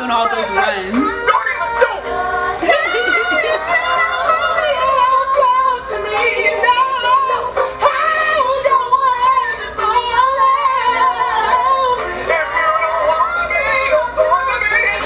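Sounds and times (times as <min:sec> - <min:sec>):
person singing vocal runs: 0:00.0 - 0:04.5.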